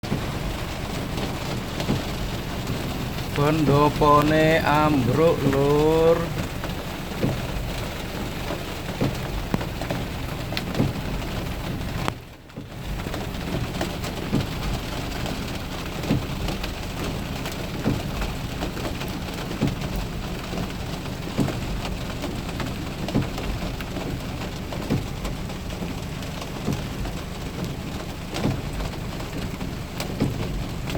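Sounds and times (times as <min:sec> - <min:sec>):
heavy rain pouring: 0:00.0 - 0:30.9.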